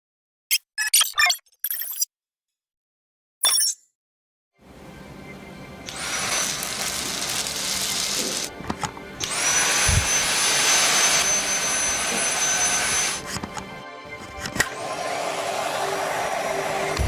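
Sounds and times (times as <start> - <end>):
handheld vacuum cleaner whining: 5.9 - 13.6, 14.4 - 17.0.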